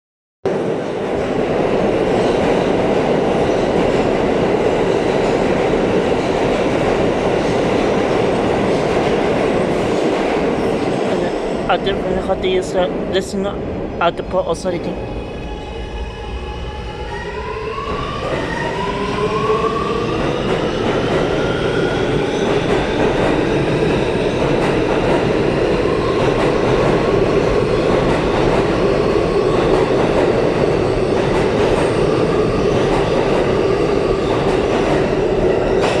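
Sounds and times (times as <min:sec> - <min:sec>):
train running noise: 0:20.0 - 0:36.0.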